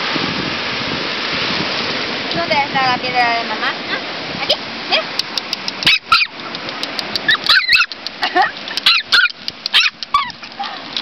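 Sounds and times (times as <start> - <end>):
stones clicking together: 5.2 - 11.0
dog yipping: 5.8 - 6.5, 7.2 - 8.0, 8.8 - 10.8.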